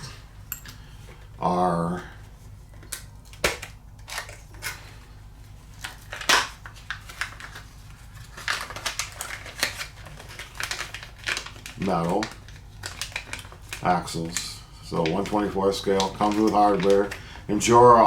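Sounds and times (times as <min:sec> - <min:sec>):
packaging crinkling and rattling: 0:02.8 - 0:04.9, 0:05.7 - 0:18.0.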